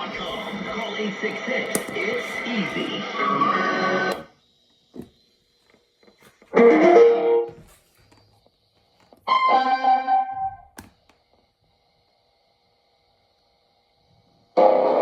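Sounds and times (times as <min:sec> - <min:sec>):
strummed guitar chords on radio: 0:14.6 - 0:15.0.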